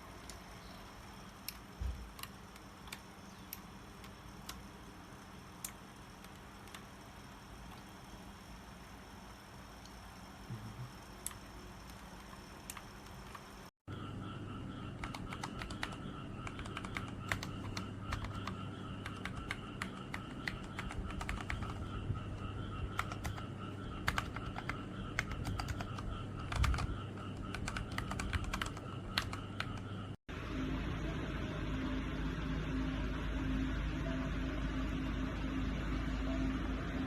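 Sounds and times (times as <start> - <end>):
faint steady hum: 0.0 - 37.0.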